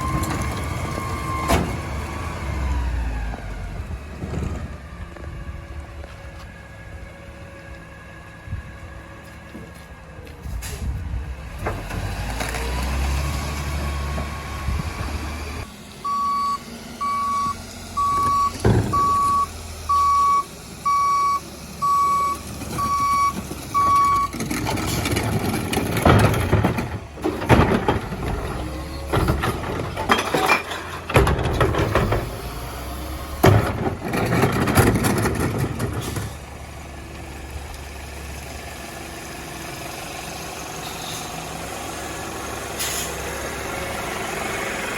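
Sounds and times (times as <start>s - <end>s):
garbage truck diesel engine: 0.0s - 44.9s
rattling and banging of truck loading: 0.0s - 44.9s
backup alarm beeping: 16.0s - 24.4s.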